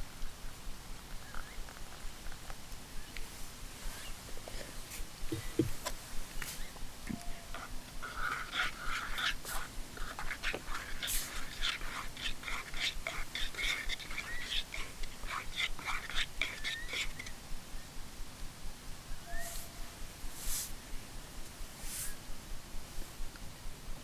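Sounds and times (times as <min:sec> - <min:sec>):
birds chirping and chattering: 0:01.1 - 0:01.8, 0:10.2 - 0:17.4.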